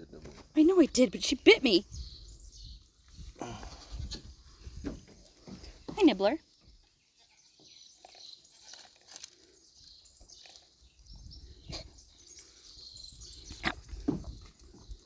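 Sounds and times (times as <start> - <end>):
goats knocking and scuffling: 4.0 - 7.8, 13.4 - 15.0.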